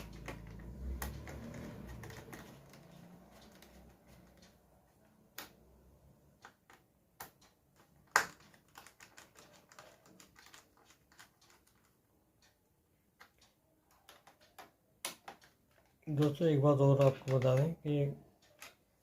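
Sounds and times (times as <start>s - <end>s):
small clicks and taps: 0.0s - 5.7s, 6.4s - 19.0s.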